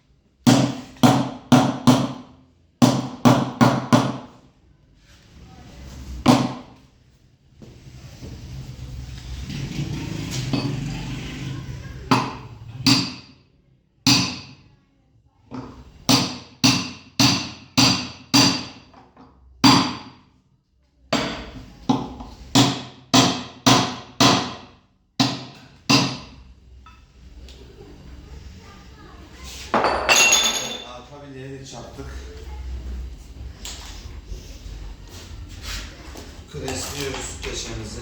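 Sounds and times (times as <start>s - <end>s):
hammer striking metal: 12.1s - 13.4s, 14.1s - 14.6s.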